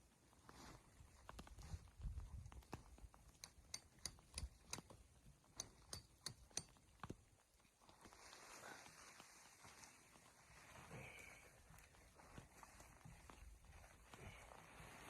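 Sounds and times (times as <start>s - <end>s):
sharp clicks and snaps: 2.6s - 5.0s.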